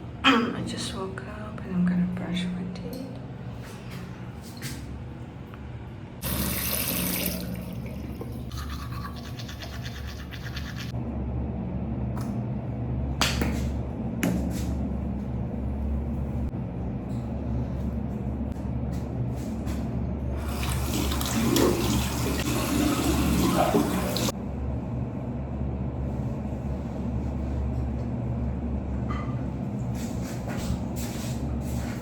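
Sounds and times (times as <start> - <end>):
steady low hum: 0.0 - 21.2, 22.1 - 32.0
running tap water: 6.2 - 10.9, 20.3 - 24.4
toothbrush scrubbing: 8.2 - 11.0.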